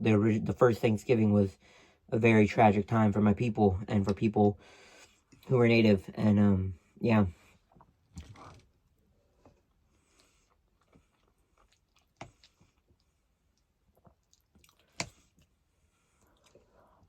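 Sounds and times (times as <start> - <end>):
person chewing: 10.0 - 15.5, 16.2 - 17.0.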